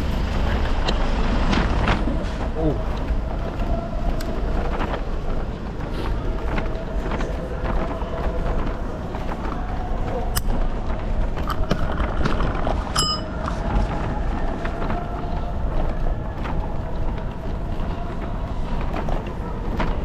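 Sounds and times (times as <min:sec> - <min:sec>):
wind and road noise rumble: 0:00.0 - 0:20.0
scattered clicks: 0:10.3 - 0:13.6.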